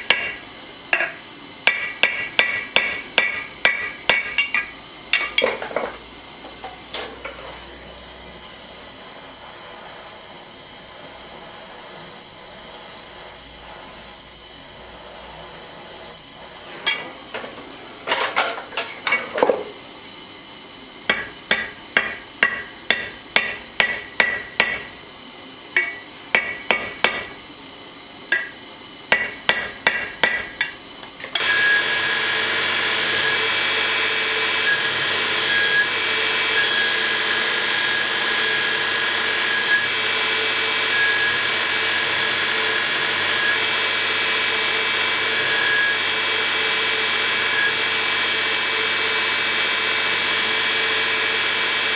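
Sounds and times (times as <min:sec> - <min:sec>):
hammer striking with ringing: 0:01.0 - 0:05.5, 0:21.1 - 0:24.9, 0:25.8 - 0:27.4, 0:28.3 - 0:30.8
power tool whining: 0:30.6 - 0:51.9.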